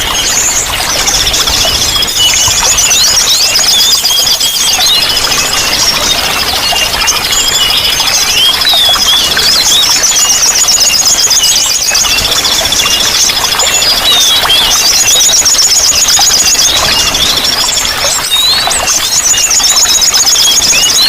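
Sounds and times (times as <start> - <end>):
running water: 0.0 - 21.0
songbirds singing and trilling: 0.0 - 21.0.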